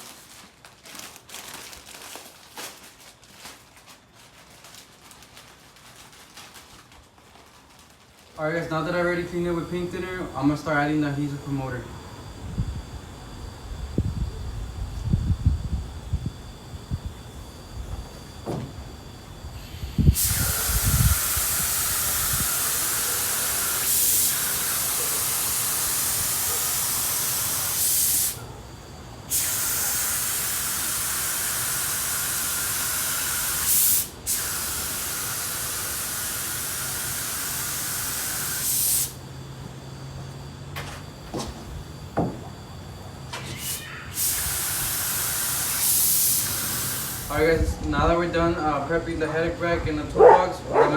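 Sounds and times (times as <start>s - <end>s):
spray hissing: 19.6s - 28.5s, 29.3s - 39.2s, 43.5s - 47.6s.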